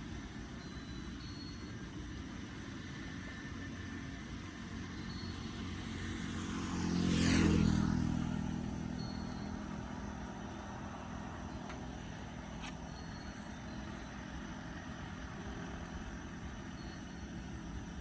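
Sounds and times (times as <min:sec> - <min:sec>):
vehicle driving past: 0:05.2 - 0:16.6.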